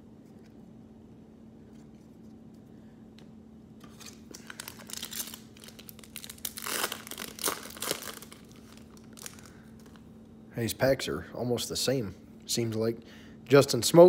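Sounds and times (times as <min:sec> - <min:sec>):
foil wrapper tearing and crinkling: 0:03.9 - 0:10.0.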